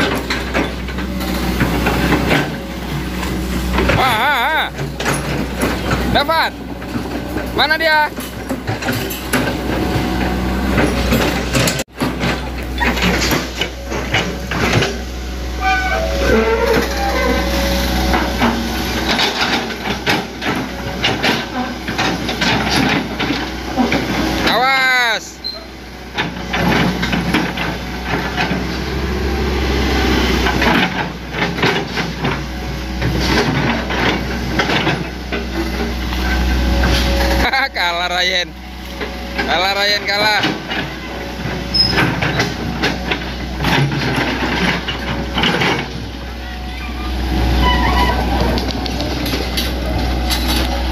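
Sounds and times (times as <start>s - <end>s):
metallic clanks and knocks: 0.0s - 24.2s, 25.5s - 28.9s, 39.0s - 50.9s
excavator diesel engine running: 0.0s - 50.9s.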